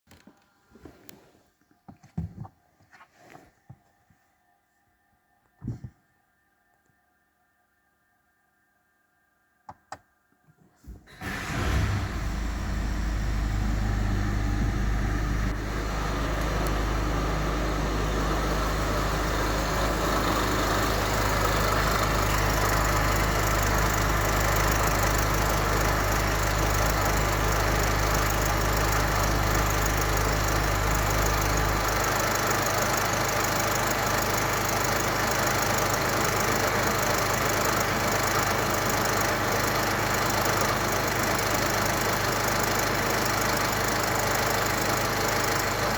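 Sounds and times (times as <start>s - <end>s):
diesel engine idling: 11.1s - 45.9s.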